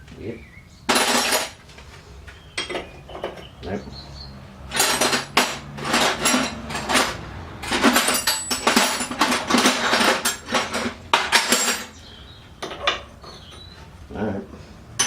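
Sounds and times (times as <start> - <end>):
metal tools clinking and rattling: 0.9 - 1.9, 2.6 - 3.5, 4.7 - 13.9.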